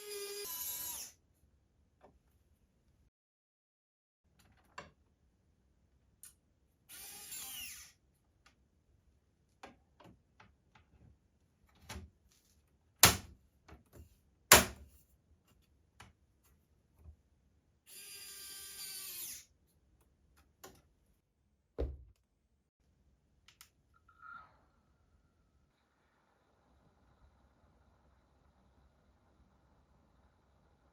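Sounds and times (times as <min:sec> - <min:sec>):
electric screwdriver driving screws: 0:00.0 - 0:01.1, 0:06.9 - 0:08.0, 0:17.9 - 0:19.4.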